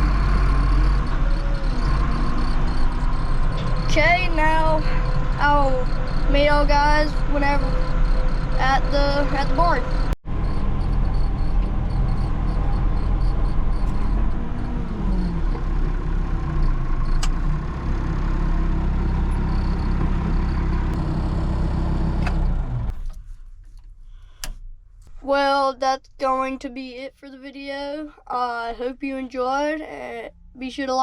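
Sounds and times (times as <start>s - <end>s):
diesel tractor engine running: 0.0s - 24.5s.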